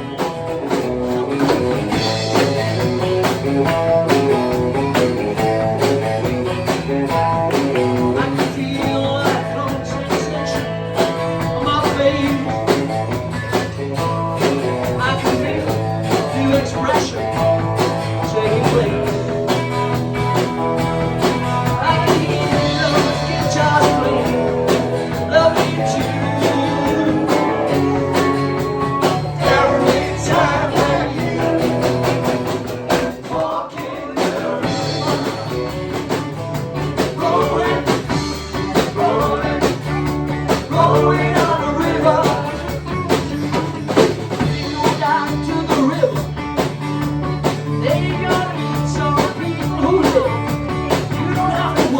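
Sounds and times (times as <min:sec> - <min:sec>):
electric guitar: 0:00.0 - 0:51.9
live rock band playing: 0:00.0 - 0:51.9
person singing: 0:21.6 - 0:36.0, 0:37.0 - 0:43.4.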